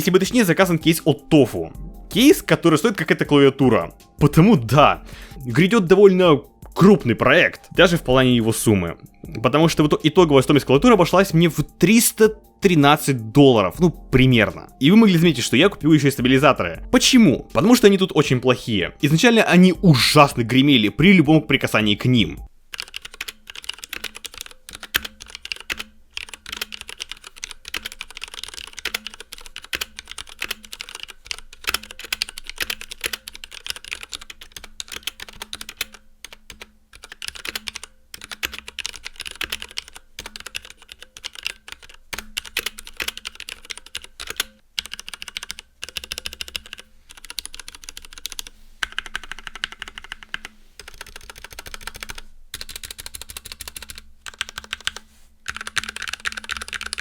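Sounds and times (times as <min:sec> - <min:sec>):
mechanical keyboard typing: 0:22.7 - 0:57.0.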